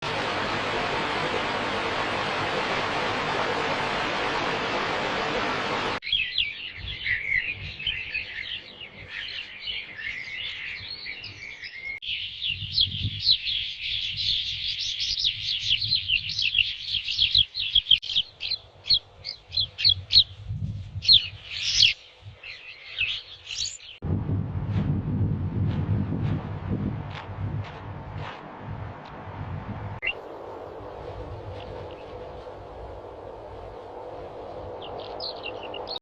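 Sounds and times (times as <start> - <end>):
small birds chirping: 6.0 - 24.0, 34.7 - 36.0.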